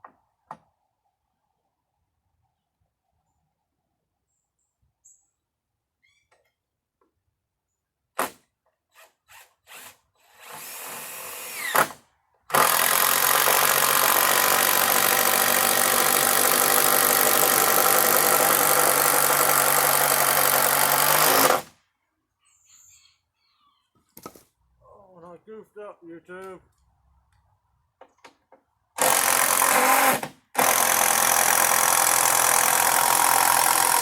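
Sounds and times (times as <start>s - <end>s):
power drill running: 12.5s - 21.7s, 29.0s - 34.0s
drill clicks: 29.0s - 34.0s.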